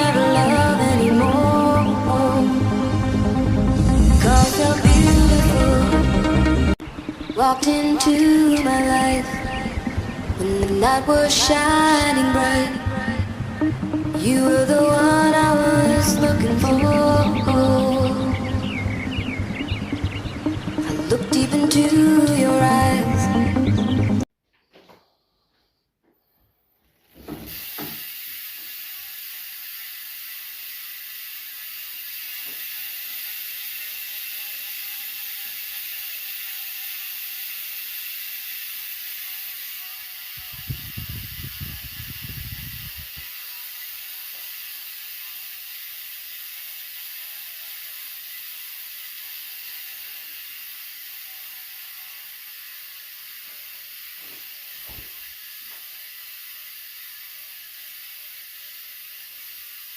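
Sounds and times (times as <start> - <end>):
bike freehub ratcheting: 0.0 - 23.1, 26.9 - 59.9
steady hiss: 27.1 - 59.9.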